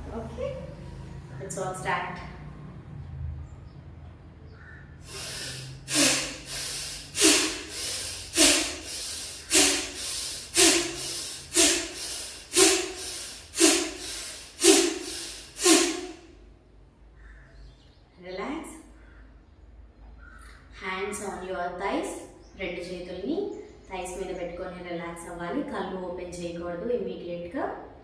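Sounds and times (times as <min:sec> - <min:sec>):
soft inhalations: 0:05.0 - 0:16.4
forceful breath exhalations: 0:05.0 - 0:16.5.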